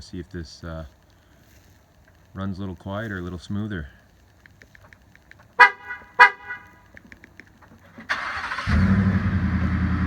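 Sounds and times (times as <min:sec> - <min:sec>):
truck horn chirps: 0:05.6 - 0:06.8
truck engine cranking: 0:07.8 - 0:10.0.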